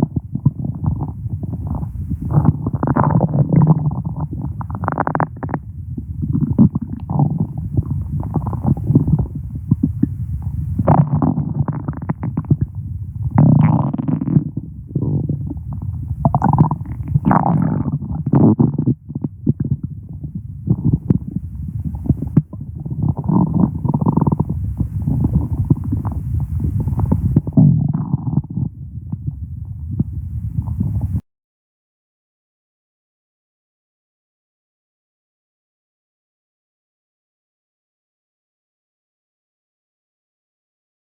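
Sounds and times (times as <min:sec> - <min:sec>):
stomach growling: 0:00.0 - 0:31.2.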